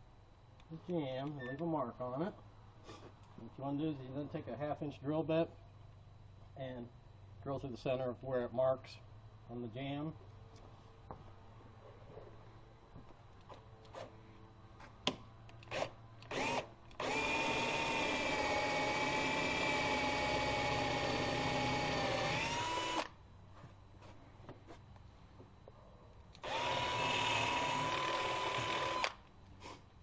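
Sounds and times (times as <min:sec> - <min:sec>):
power drill boring into wood: 0:15.7 - 0:23.1, 0:26.4 - 0:29.2.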